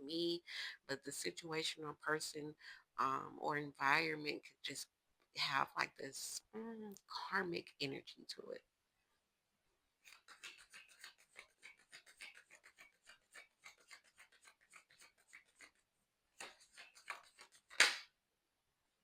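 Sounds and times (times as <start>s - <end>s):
cards being shuffled: 10.0s - 15.8s, 16.4s - 18.1s
card slap: 16.4s - 18.1s.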